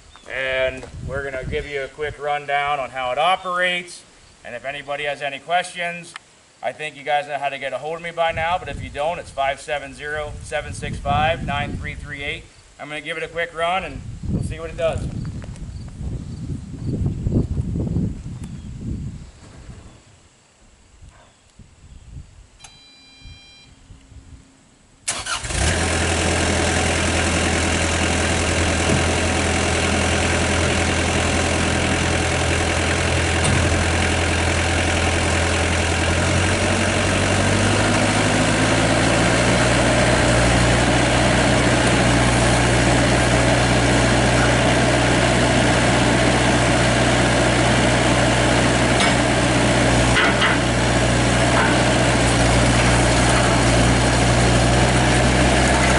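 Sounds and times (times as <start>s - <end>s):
short beep: 22.6s - 23.8s
diesel engine starting and idling: 25.0s - 55.9s
diesel engine revving: 25.1s - 55.9s.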